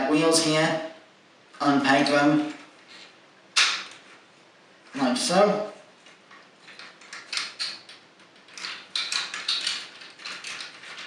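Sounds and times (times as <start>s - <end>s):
plastic toy robot clicking and rattling: 6.6s - 11.0s.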